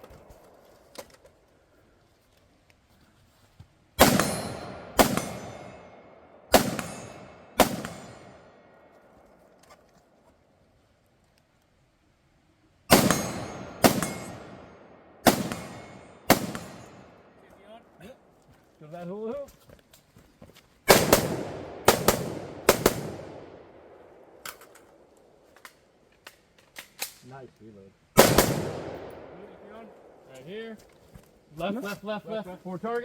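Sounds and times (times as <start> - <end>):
rifle shots with echo: 4.0 - 8.9, 12.9 - 17.4, 20.9 - 25.0, 28.2 - 30.2.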